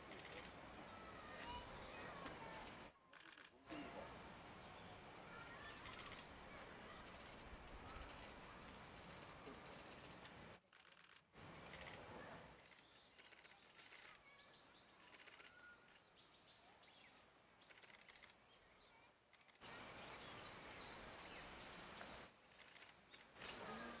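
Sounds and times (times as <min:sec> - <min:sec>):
background hiss: 0:11.3 - 0:24.0.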